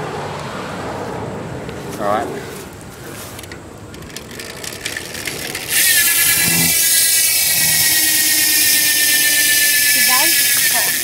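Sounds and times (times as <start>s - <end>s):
bicycle hub ratcheting buzz: 3.9s - 11.0s.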